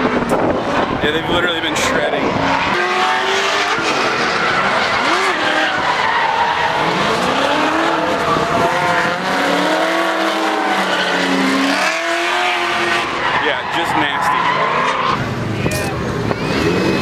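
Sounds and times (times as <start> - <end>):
car engines revving: 0.0 - 17.0
tyres squealing: 0.6 - 17.0.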